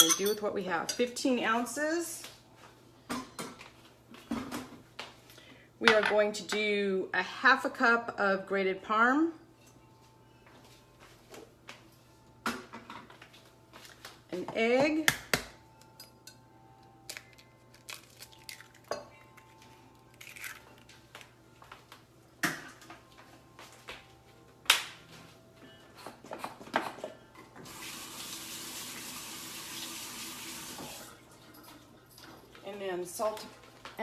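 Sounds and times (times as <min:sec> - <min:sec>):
dishes clinking against mixing bowl: 0:00.0 - 0:01.1
kitchen tap running: 0:27.7 - 0:31.2.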